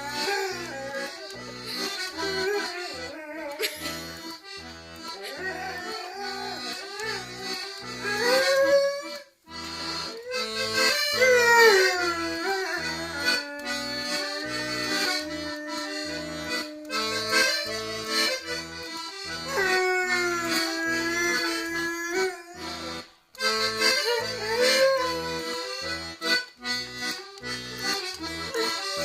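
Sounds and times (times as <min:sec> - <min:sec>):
accordion playing a tune: 0:00.0 - 0:29.0
oom-pah bass: 0:00.0 - 0:29.0
dog howling: 0:05.3 - 0:07.4, 0:08.0 - 0:09.2, 0:11.2 - 0:17.6, 0:19.5 - 0:22.9, 0:24.1 - 0:25.5.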